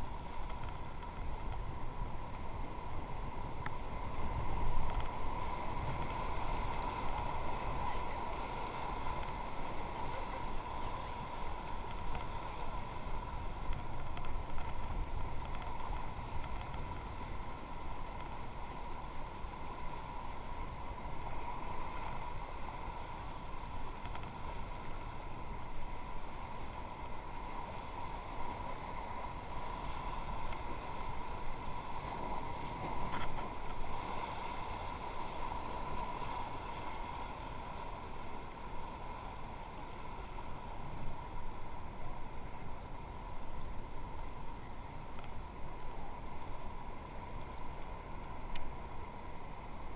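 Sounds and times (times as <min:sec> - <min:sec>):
river water rushing: 0:00.0 - 0:49.9
wind rumbling on microphone: 0:00.0 - 0:49.9.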